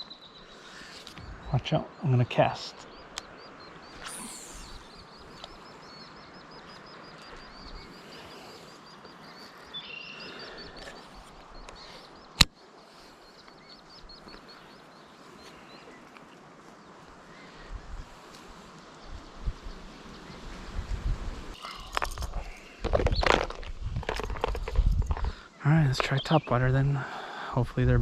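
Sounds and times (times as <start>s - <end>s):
faint background noise: 0.0s - 28.0s
high chirping call: 1.2s - 12.4s
short falling swish: 4.0s - 4.9s.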